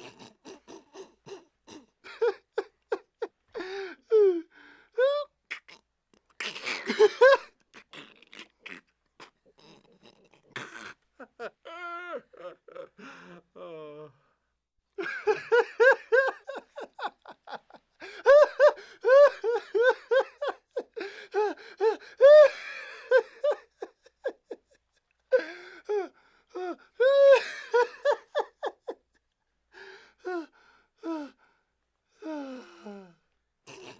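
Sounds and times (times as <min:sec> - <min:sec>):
man laughing heartily: 0:02.0 - 0:03.7, 0:11.2 - 0:14.0, 0:15.0 - 0:25.0, 0:27.0 - 0:29.2
gasping breaths: 0:03.5 - 0:05.1, 0:11.7 - 0:14.5, 0:29.7 - 0:33.9.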